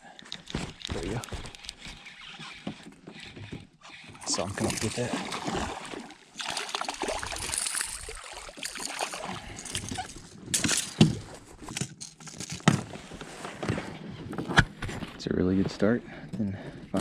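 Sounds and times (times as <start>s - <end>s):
water splashing and dripping: 4.2s - 10.1s.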